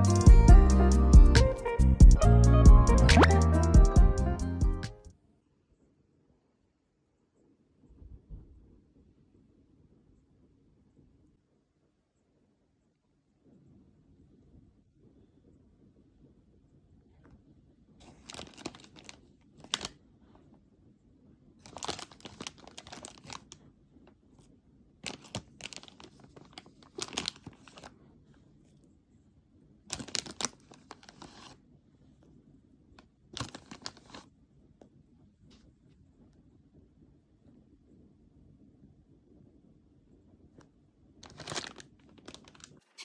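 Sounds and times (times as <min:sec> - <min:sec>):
packaging crinkling and tearing: 0:18.0 - 0:20.0, 0:21.6 - 0:23.6, 0:25.0 - 0:27.9, 0:29.9 - 0:31.6, 0:33.4 - 0:34.3, 0:41.2 - 0:43.0.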